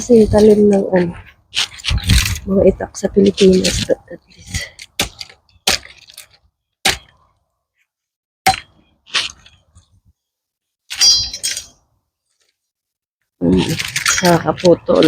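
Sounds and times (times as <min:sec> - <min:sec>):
blade striking branches: 0:04.5 - 0:07.2, 0:10.9 - 0:11.8.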